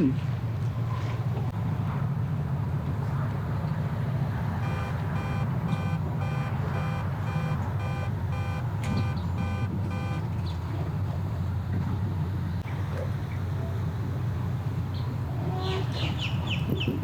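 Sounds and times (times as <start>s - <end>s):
engine idling rumble: 2.3s - 15.5s
vehicle backup alarm beeping: 4.5s - 10.3s.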